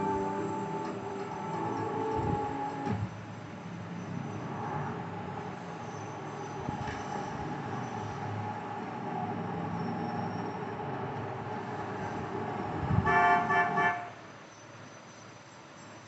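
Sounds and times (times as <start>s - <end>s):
traffic hum: 0.0s - 14.5s
vehicle horn honking: 13.0s - 14.2s.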